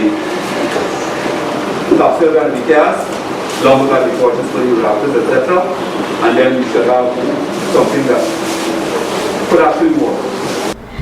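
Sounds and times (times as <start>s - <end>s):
steady rushing noise: 10.6s - 11.0s.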